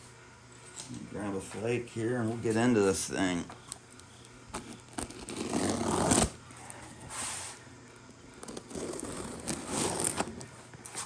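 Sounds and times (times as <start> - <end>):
cardboard scraping and tearing: 4.6 - 6.4, 8.4 - 10.5.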